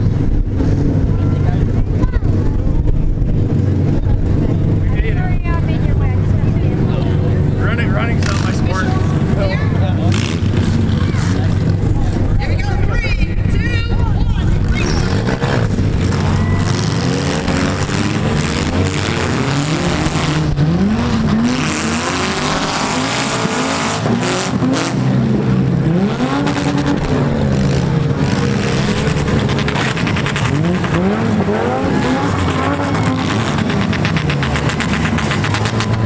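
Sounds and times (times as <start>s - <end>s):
car engines revving: 0.0s - 36.0s
tyres squealing: 7.7s - 25.0s.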